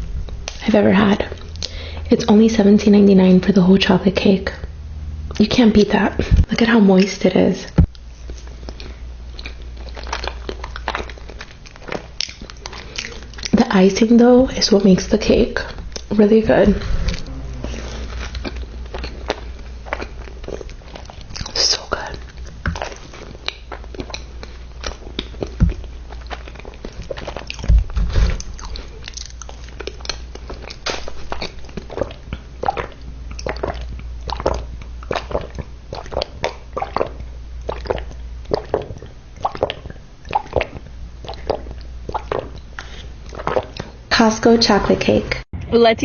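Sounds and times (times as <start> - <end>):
steady low hum: 0.0 - 46.0
chewing and smacking cake: 7.8 - 44.0
low thumps: 15.4 - 18.8, 27.6 - 28.7.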